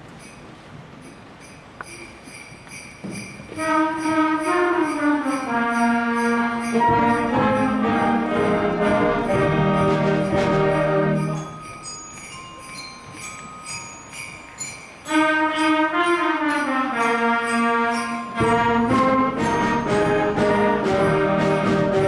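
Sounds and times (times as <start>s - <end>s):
sleigh bells shaken: 0.2s - 22.0s
concert band with brass: 3.5s - 11.6s, 15.0s - 22.0s.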